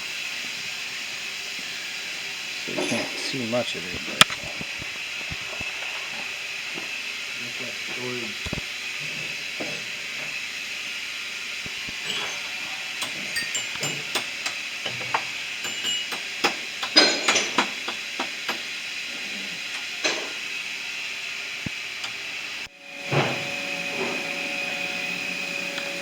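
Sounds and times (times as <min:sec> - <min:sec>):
steady hiss: 0:00.0 - 0:26.0.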